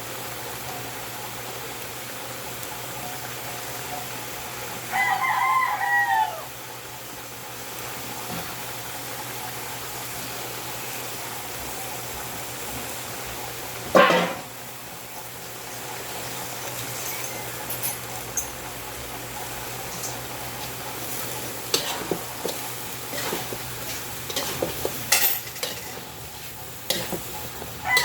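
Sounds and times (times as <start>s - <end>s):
rooster crowing: 4.8s - 6.6s, 27.7s - 28.0s.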